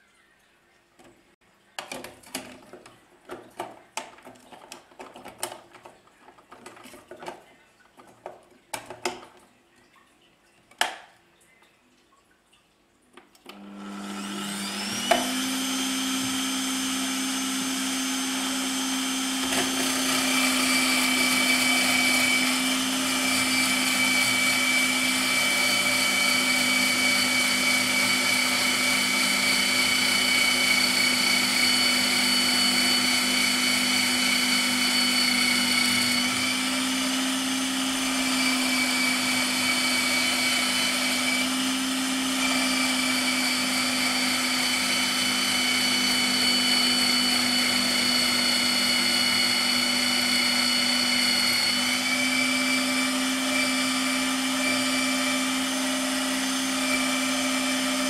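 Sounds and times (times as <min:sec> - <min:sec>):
electric meat mincer motor whine: 0:13.5 - 0:58.0.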